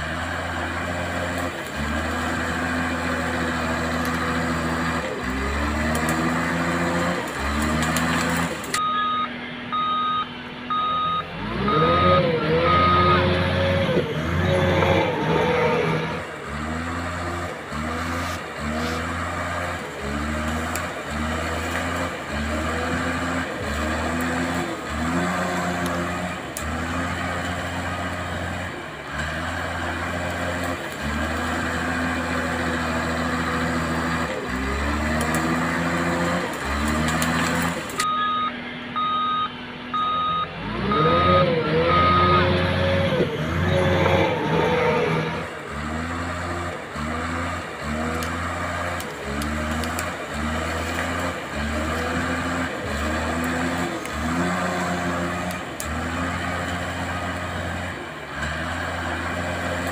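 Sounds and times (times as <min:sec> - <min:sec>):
toy bulldozer motors whining: 0:00.0 - 0:59.9
reversing beeper: 0:08.7 - 0:16.2, 0:38.0 - 0:45.4.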